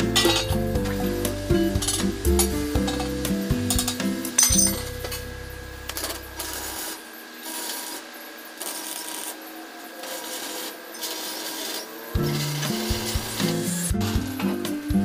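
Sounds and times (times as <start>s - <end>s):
background music: 0.0s - 6.7s, 12.2s - 15.0s.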